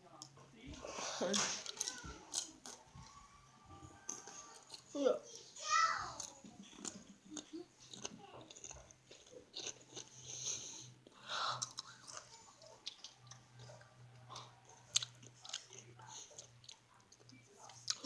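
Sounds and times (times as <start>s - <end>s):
person chewing crunchy chips: 4.1s - 5.0s, 6.2s - 16.8s.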